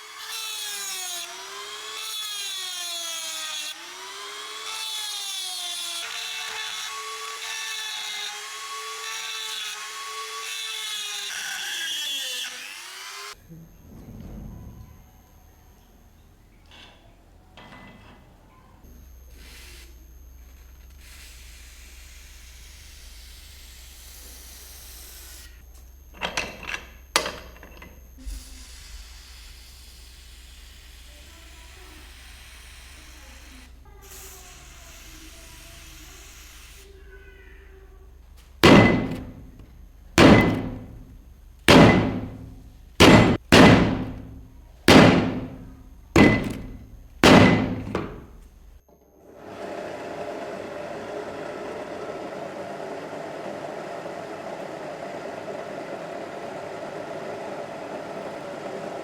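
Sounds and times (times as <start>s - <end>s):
hiss: 21.0s - 25.6s, 28.2s - 37.1s
hammer striking metal: 38.6s - 39.6s, 40.2s - 48.5s.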